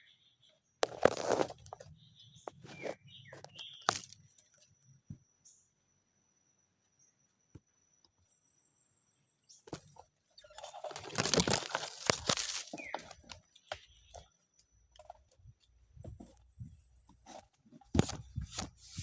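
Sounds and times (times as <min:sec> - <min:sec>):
leaves and twigs rustling: 0:00.8 - 0:01.9, 0:02.5 - 0:04.7, 0:09.7 - 0:14.3.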